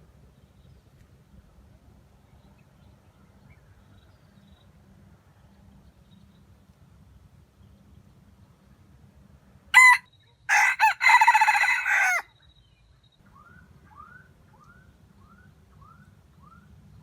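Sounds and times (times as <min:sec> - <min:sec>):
rooster crowing: 0:09.8 - 0:12.3.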